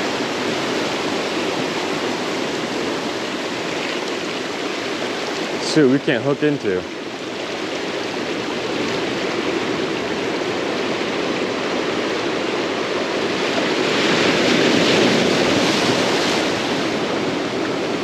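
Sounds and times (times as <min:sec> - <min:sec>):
ocean surf washing ashore: 0:00.0 - 0:18.0.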